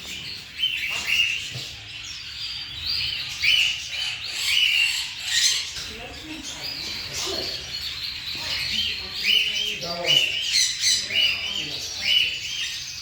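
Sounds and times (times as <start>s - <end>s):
parrot chirping: 0.0s - 13.0s.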